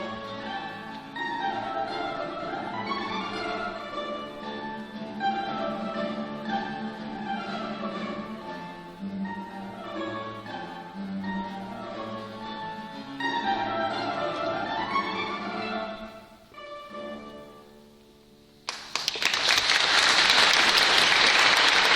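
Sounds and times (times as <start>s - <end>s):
balalaika and guitar playing: 0.0s - 18.0s
loud applause: 18.7s - 21.9s.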